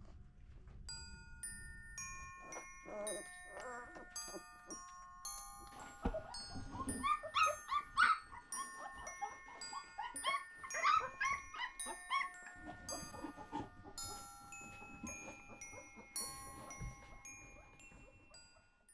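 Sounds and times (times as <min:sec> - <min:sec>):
soft chiming music: 0:00.7 - 0:18.9
puppies squeaking and whining: 0:02.4 - 0:04.8, 0:05.8 - 0:14.2, 0:14.8 - 0:18.5.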